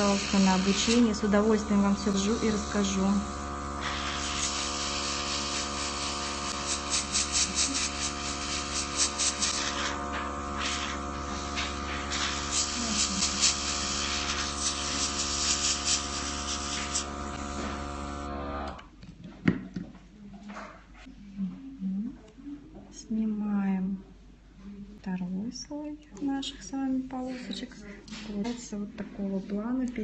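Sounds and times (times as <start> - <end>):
airbrush spray hissing: 0.0 - 18.2
air compressor humming: 0.0 - 18.8.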